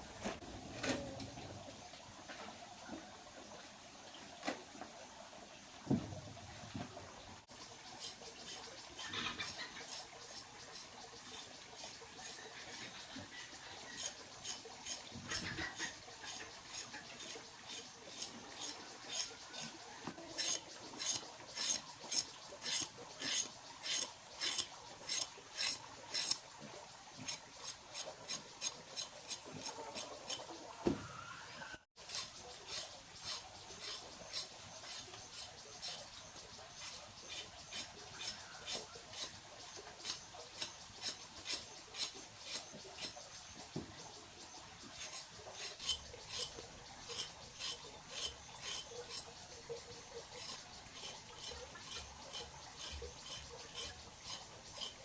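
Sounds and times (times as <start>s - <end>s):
rhythmic clicking scraping strokes: 7.5s - 19.8s, 20.4s - 26.4s, 32.0s - 43.7s, 44.4s - 55.0s.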